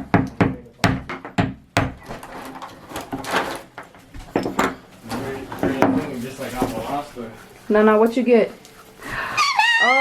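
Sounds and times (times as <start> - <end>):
hard objects knocking and clicking: 0.0 - 4.8.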